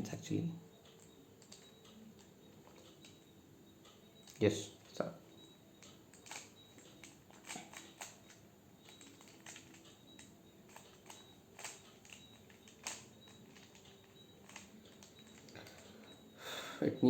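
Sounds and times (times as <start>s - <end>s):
puzzle cube layers clicking: 5.8s - 15.8s.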